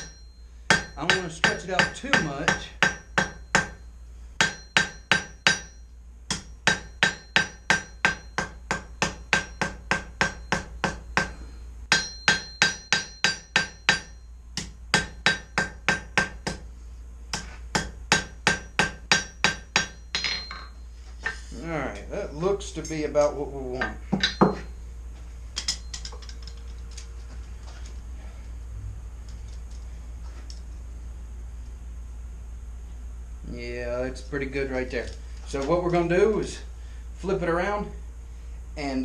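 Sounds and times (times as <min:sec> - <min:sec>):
hammer striking steel on anvil: 0:00.0 - 0:16.7, 0:17.3 - 0:21.4, 0:23.7 - 0:24.8, 0:25.6 - 0:26.5.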